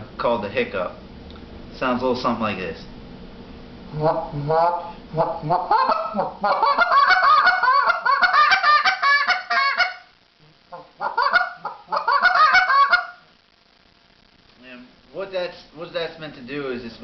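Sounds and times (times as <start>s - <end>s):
goose call honking: 3.9s - 10.1s, 10.7s - 13.2s.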